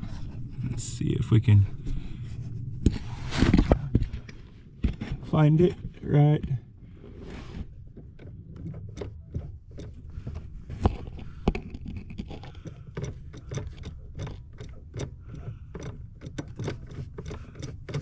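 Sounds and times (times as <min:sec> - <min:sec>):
low steady hum: 0:00.0 - 0:18.0
clicks and knocks of handled parts: 0:07.8 - 0:18.0.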